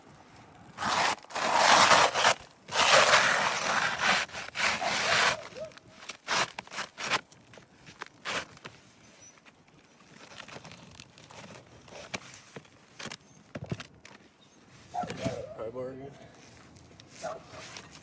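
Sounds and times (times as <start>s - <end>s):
rough scraping strokes: 0.7s - 7.2s.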